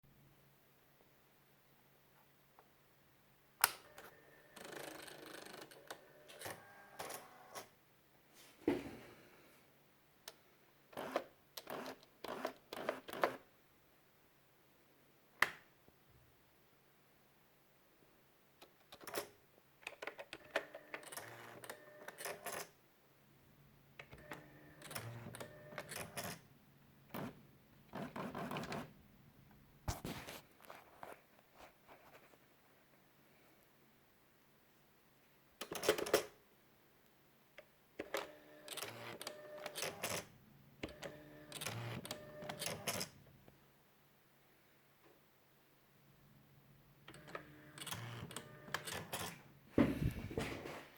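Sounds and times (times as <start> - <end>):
typewriter mechanical whirring: 47.1 - 49.4.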